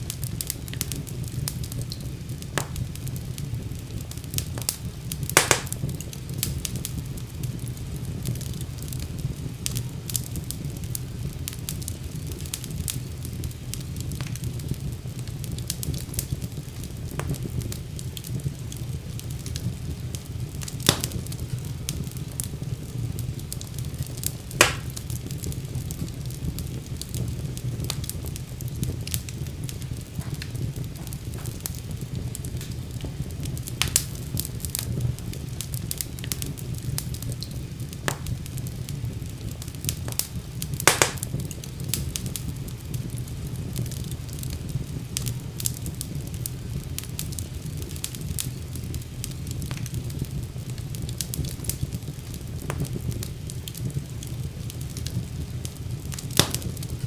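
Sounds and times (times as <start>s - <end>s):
fire crackling and popping: 0.0s - 57.0s
fire rumbling: 0.0s - 57.0s.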